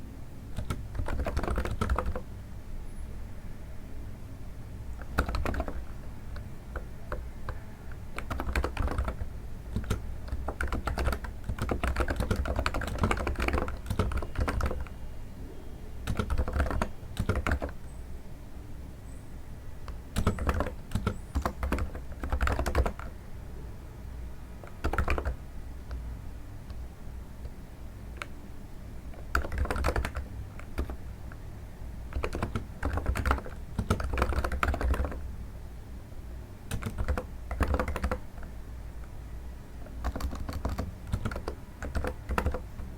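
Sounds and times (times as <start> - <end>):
keyboard typing: 0.6 - 2.3, 5.0 - 15.0, 16.0 - 17.8, 19.8 - 23.2, 24.6 - 26.0, 27.4 - 28.4, 29.1 - 31.2, 32.1 - 35.3, 36.7 - 39.2, 39.8 - 42.9.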